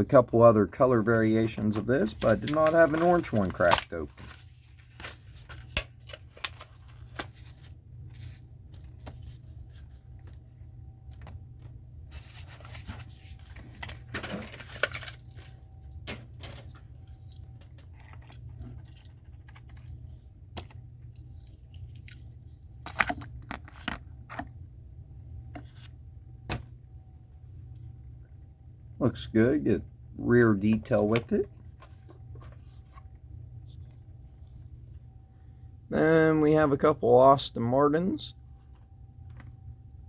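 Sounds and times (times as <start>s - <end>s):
steady low hum: 0.0s - 40.0s.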